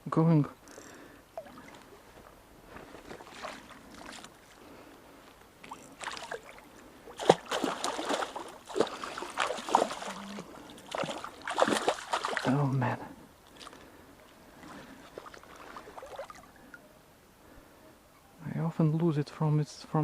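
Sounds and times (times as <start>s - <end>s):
water splashing and sloshing: 1.3s - 16.8s.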